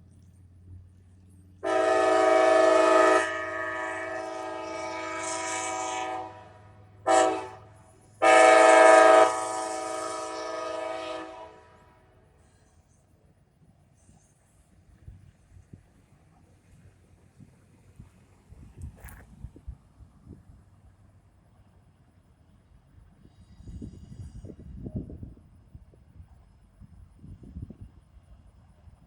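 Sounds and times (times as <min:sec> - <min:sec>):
faint train rumble: 0:00.0 - 0:29.0
locomotive horn blasts: 0:01.6 - 0:12.1.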